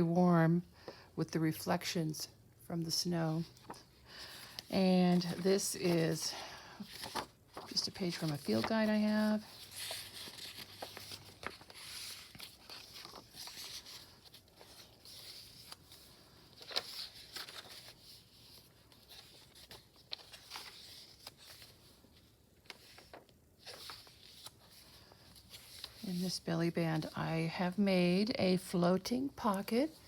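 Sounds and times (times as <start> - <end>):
paper pages rustling: 3.4 - 27.2.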